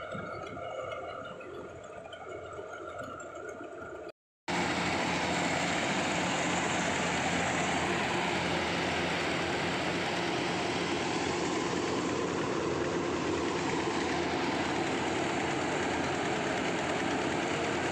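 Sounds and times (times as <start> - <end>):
combine harvester engine drone: 4.5 - 17.9.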